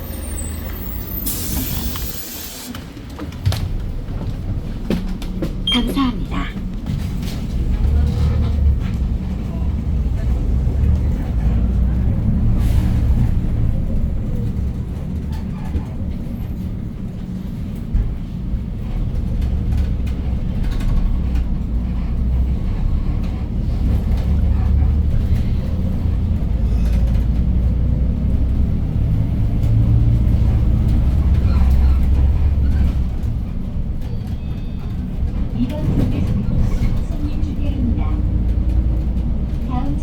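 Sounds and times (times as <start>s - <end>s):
bus engine low rumble: 0.0s - 40.0s.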